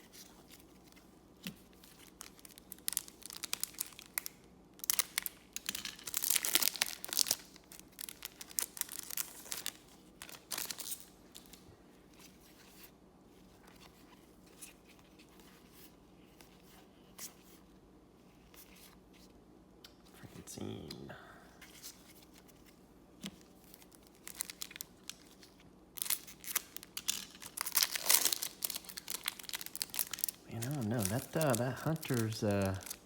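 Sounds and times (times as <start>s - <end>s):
plastic wrapper tearing and crinkling: 1.8s - 11.6s, 23.4s - 33.0s.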